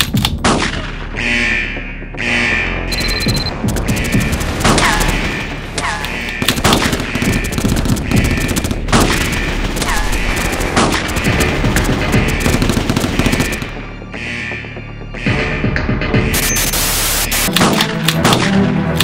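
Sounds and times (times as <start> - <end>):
automatic gunfire: 6.4 - 13.8.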